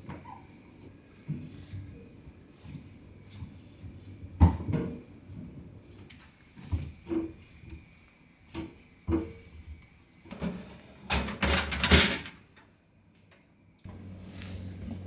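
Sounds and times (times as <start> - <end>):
low hum: 13.9 - 15.0.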